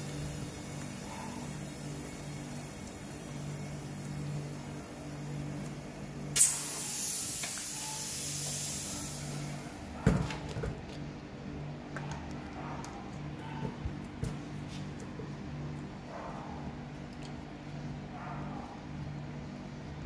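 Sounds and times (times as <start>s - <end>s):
loud hiss: 6.4s - 9.8s.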